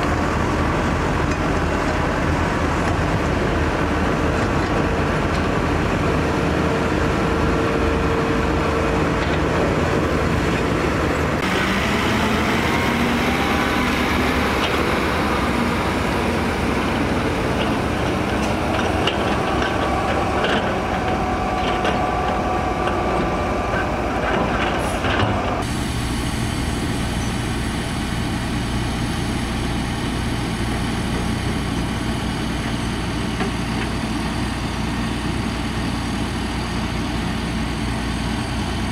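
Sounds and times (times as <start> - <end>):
diesel machinery running: 0.0 - 38.9
knocks and clanks: 17.6 - 23.0.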